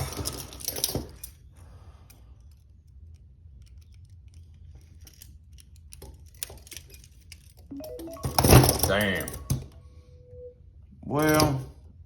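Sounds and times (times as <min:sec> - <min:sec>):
metal clicks of handcuff picking: 0:02.0 - 0:07.6.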